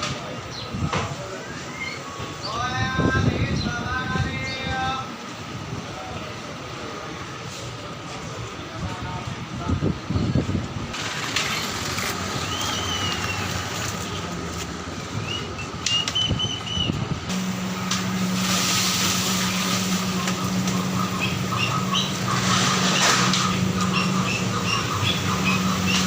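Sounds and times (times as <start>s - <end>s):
traffic rumble: 0.0s - 26.0s
low engine hum: 10.3s - 26.0s
high bird chirps: 12.4s - 13.6s, 19.4s - 26.0s.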